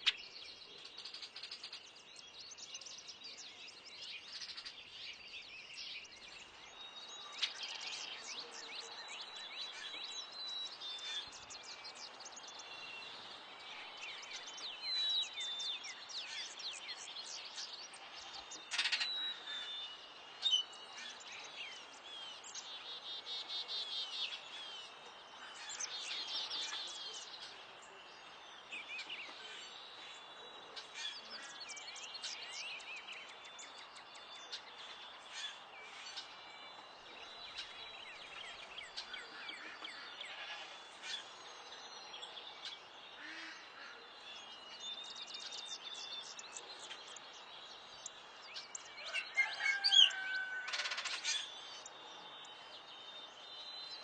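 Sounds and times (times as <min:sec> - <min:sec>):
songbirds chorus: 0:00.0 - 0:54.0
sharp bird calls: 0:28.6 - 0:41.4, 0:42.6 - 0:44.6, 0:48.0 - 0:51.6.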